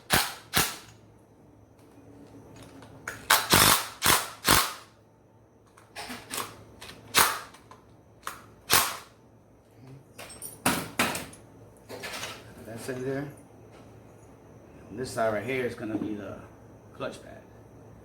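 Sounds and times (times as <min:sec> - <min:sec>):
impact drill bursts: 0:03.4 - 0:04.8.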